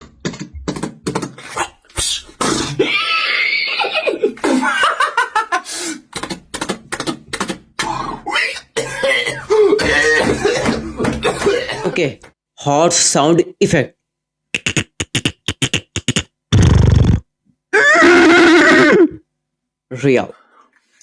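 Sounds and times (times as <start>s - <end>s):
beatboxer mouth clicks and pops: 14.6s - 16.8s.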